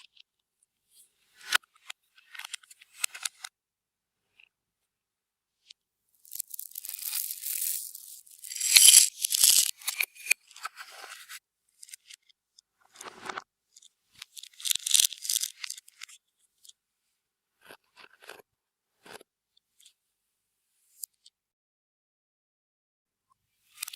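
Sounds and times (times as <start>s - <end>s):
slime squishing and crackling: 6.3s - 9.7s.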